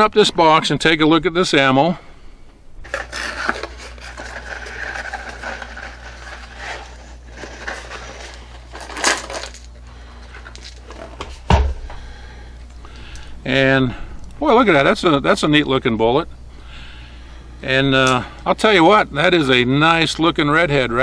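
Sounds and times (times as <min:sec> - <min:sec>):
box rustling and scraping: 0:02.8 - 0:11.4
cartridges clinking: 0:08.8 - 0:09.7.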